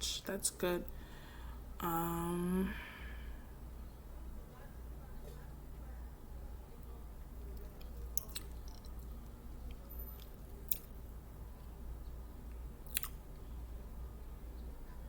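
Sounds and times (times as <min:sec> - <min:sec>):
steady low hum: 0:00.0 - 0:15.0
person chewing: 0:07.5 - 0:11.0, 0:12.8 - 0:13.4
wet mouth clicks: 0:07.8 - 0:09.1, 0:10.7 - 0:10.9, 0:12.8 - 0:13.2.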